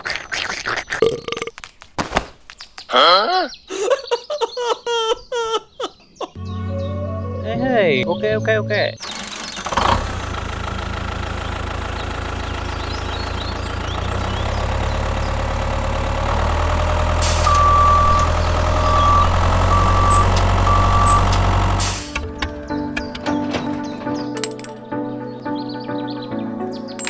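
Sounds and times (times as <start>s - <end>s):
heavy truck engine running: 8.4s - 25.1s
short reversing beeps: 17.2s - 22.2s.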